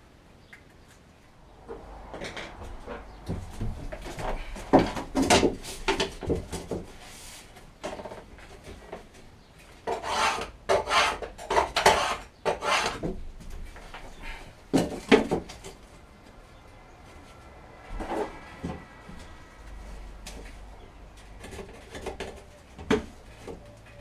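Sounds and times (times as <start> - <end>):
hand tool rasping wood: 9.8 - 13.1.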